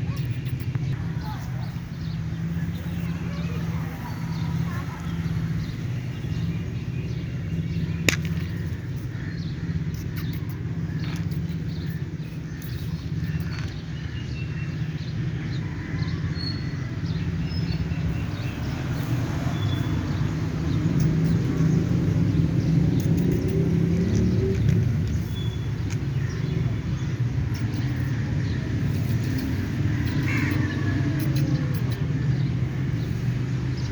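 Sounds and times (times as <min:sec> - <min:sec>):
sharp click: 0:07.9 - 0:09.1, 0:22.6 - 0:26.5, 0:27.5 - 0:28.2
steady low rumble: 0:17.3 - 0:33.9.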